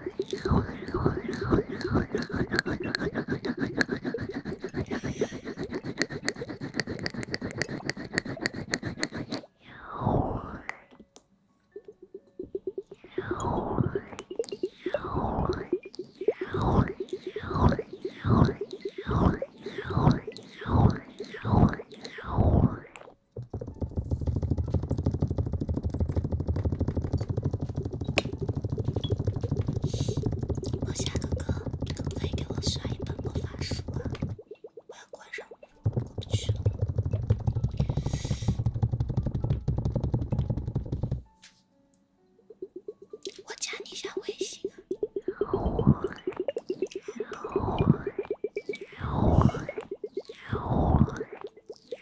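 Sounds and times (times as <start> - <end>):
scratching against microphone: 0.0 - 9.5, 23.4 - 34.5, 35.3 - 41.3.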